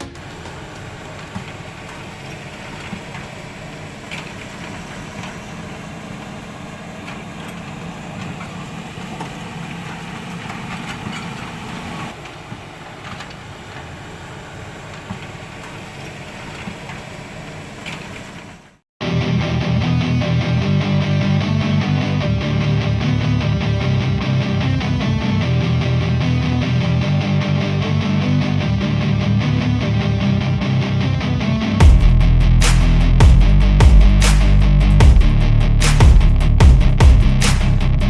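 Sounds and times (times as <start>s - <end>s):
engine idling: 0.0s - 18.7s.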